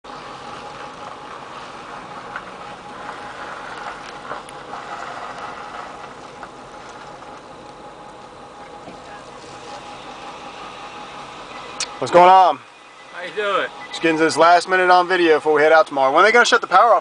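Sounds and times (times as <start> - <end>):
floodwater rushing across road: 0.1 - 17.0.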